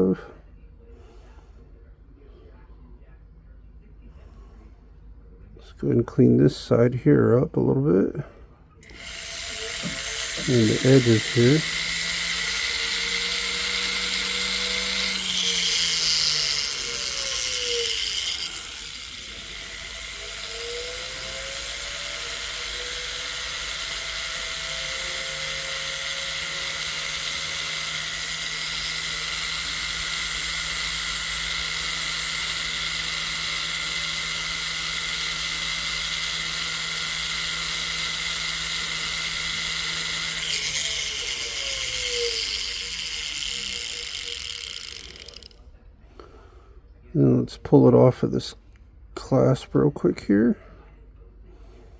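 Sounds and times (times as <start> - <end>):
rotary tool motor whine: 8.8 - 45.8.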